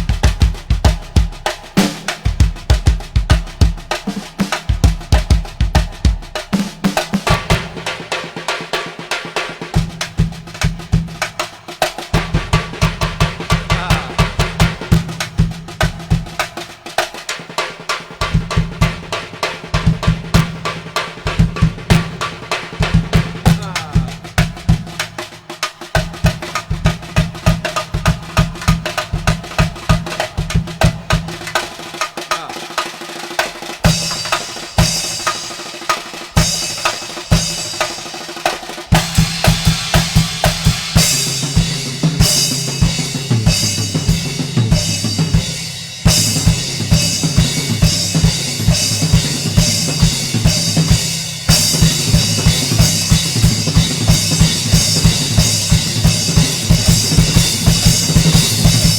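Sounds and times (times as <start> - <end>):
cymbals: 0.0 - 58.9
drum kit playing: 0.0 - 58.9.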